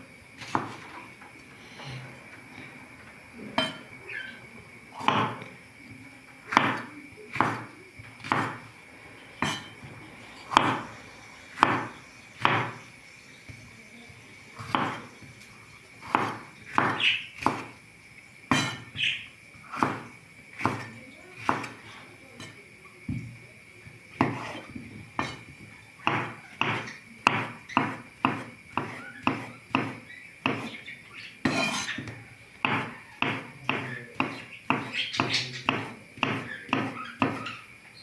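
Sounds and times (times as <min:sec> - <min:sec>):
knocks on hard surface: 0:11.6 - 0:12.8.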